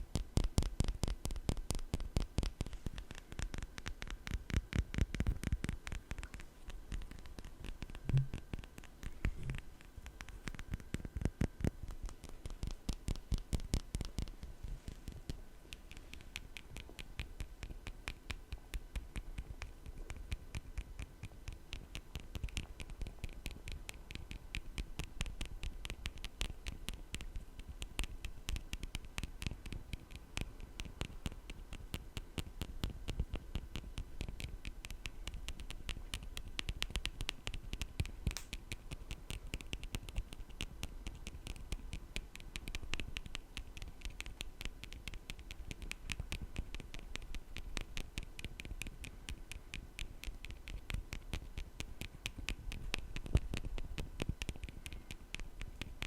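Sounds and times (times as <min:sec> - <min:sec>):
fingertip tapping on microphone: 0:00.0 - 0:56.0.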